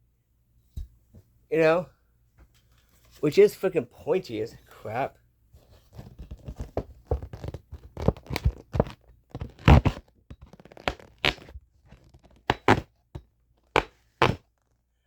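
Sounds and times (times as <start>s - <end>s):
metal multitool knocking and scraping: 12.3s - 14.4s.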